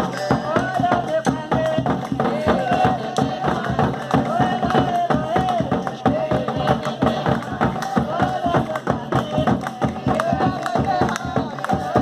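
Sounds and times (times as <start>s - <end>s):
hand drums beating fast rhythm: 0.0s - 12.0s.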